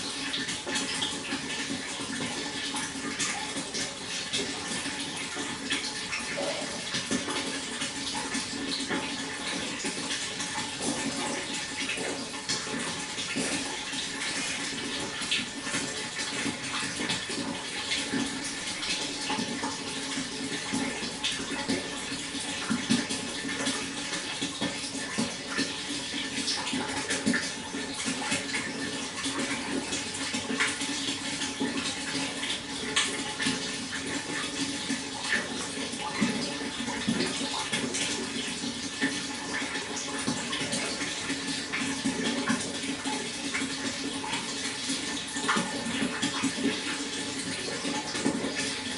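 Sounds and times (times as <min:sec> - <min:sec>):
small water splashes: 0:00.0 - 0:48.9
water rushing: 0:05.8 - 0:07.5.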